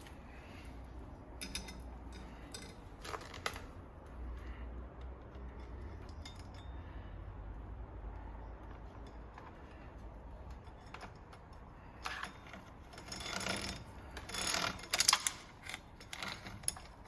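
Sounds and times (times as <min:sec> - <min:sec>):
bicycle chain clinking: 0:10.7 - 0:17.0.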